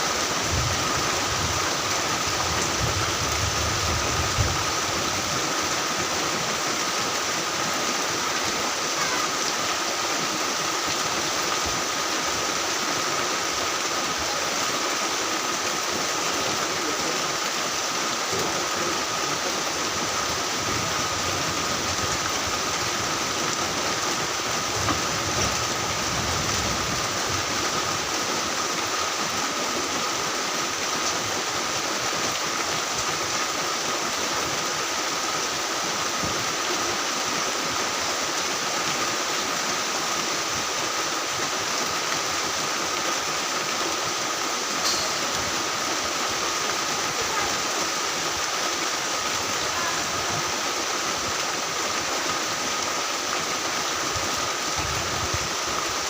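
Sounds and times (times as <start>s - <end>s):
heavy rain: 0.0s - 56.0s.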